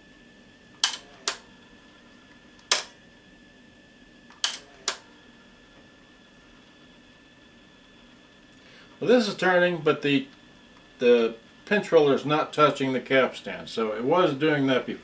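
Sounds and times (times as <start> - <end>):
cassette deck keys clicking: 0.8 - 1.5, 2.6 - 3.0, 4.3 - 5.1.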